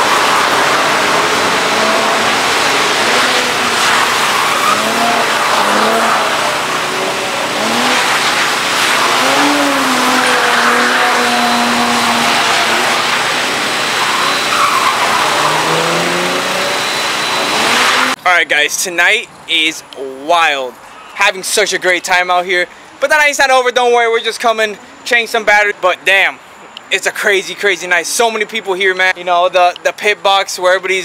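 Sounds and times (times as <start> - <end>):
car engines revving: 0.0 - 18.2
tires squealing and skidding: 0.0 - 18.2.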